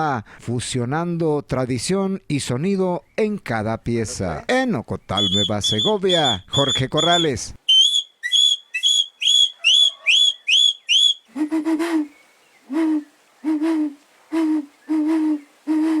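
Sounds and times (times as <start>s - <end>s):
high chirping whistle notes: 5.2s - 11.5s
low hooting whistle notes: 5.2s - 12.0s.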